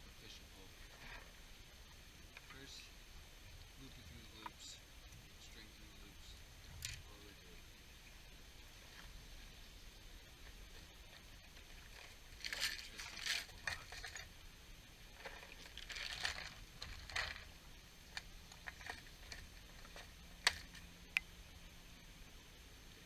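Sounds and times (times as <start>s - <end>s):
fishing tackle scraping and rustling: 0.7s - 1.4s, 6.6s - 7.1s, 10.4s - 14.4s, 15.1s - 21.0s.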